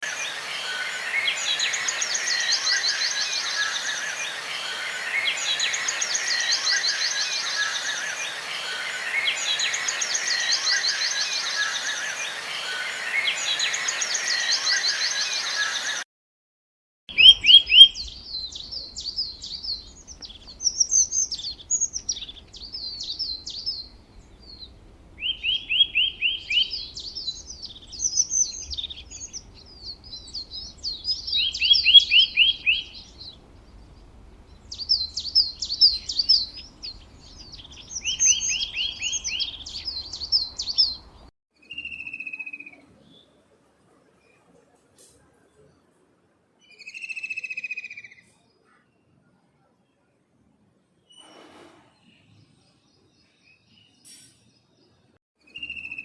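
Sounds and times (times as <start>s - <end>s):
bird chirps and trills: 0.0s - 16.0s, 17.1s - 42.2s
steady hiss: 0.0s - 16.0s
bird rapid trill: 17.1s - 34.0s.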